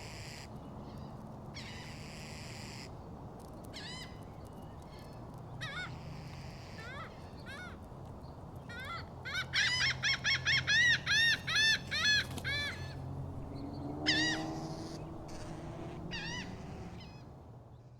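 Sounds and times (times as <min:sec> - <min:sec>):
seagulls calling: 0:05.6 - 0:07.9, 0:08.6 - 0:17.3.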